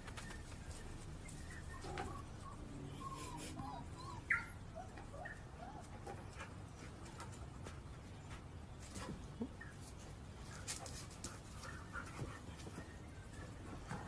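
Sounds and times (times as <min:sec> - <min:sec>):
small animal squeaking and chirping: 0:01.3 - 0:05.4.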